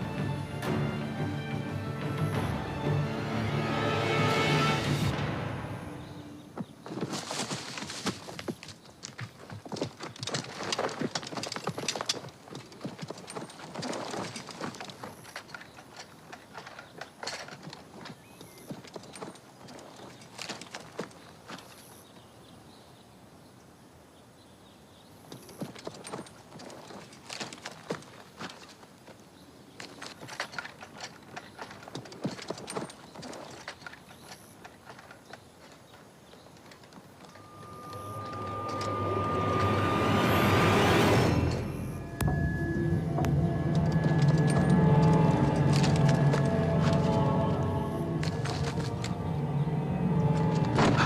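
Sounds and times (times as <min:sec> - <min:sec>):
footsteps on hard ground: 0:06.0 - 0:22.2, 0:42.2 - 0:49.4
uneven clatter of knocks: 0:29.8 - 0:37.4.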